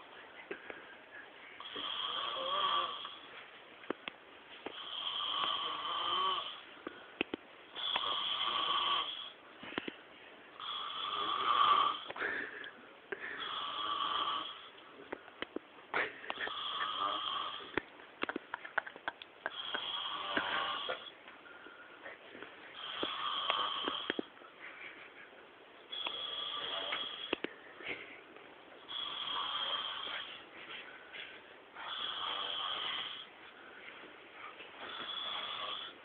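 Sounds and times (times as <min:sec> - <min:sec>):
man snoring: 0:01.6 - 0:03.3, 0:04.7 - 0:06.6, 0:07.8 - 0:09.4, 0:10.6 - 0:12.1, 0:13.4 - 0:14.7, 0:16.4 - 0:17.8, 0:19.5 - 0:21.1, 0:22.8 - 0:24.3, 0:25.9 - 0:27.4, 0:28.9 - 0:30.3, 0:31.8 - 0:33.3, 0:34.9 - 0:36.0.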